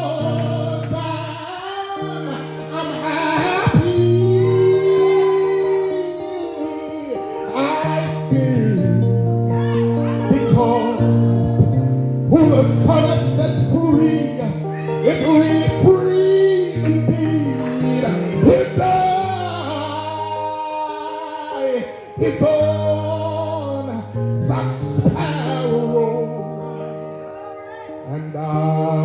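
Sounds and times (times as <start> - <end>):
gospel music: 0.0 - 29.0
sung melody with held notes: 0.0 - 29.0
sustained low instrumental chords: 8.0 - 20.6.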